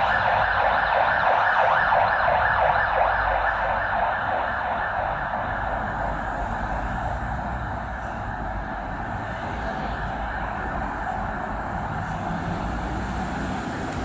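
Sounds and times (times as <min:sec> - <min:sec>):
siren: 0:00.0 - 0:12.6
traffic rumble: 0:00.0 - 0:14.0.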